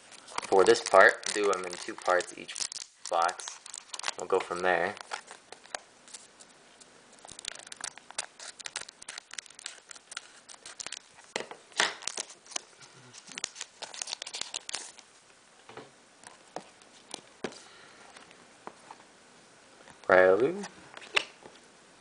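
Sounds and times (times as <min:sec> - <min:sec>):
foil crackling: 0:00.0 - 0:06.5, 0:07.2 - 0:15.0
wrapper crinkling and tearing: 0:00.0 - 0:06.5, 0:07.1 - 0:15.0
cards sliding: 0:00.1 - 0:15.0.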